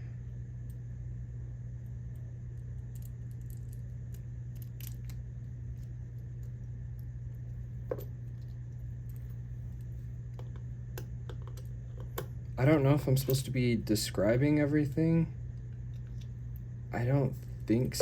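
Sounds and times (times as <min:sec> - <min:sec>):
steady low hum: 0:00.0 - 0:18.0
small lock parts clicking: 0:02.8 - 0:05.2.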